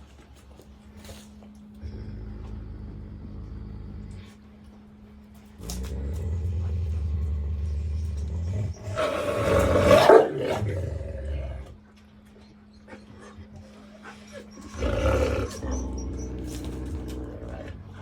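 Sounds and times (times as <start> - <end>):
dog growling and snarling: 1.8 - 4.4, 5.6 - 11.8, 13.4 - 18.0.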